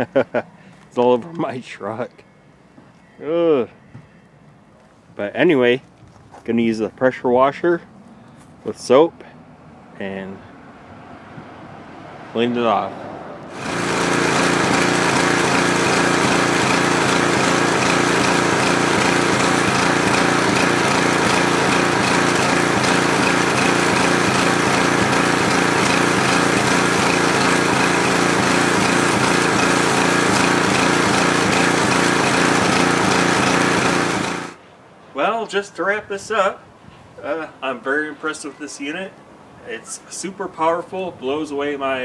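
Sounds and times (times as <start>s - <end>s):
water spray hissing: 13.5s - 34.4s
pressure washer engine running: 13.5s - 34.6s.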